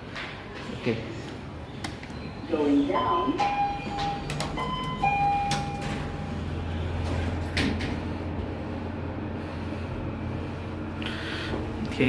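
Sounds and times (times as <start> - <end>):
lift hum: 2.0 - 12.0
lift doors clunking: 2.6 - 8.4
lift ding-dong chime: 3.3 - 6.3.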